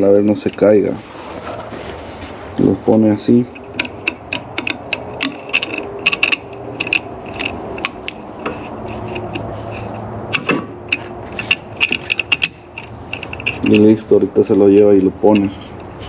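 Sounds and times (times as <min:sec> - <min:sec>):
ratchet wrench clicking: 0:03.5 - 0:14.0.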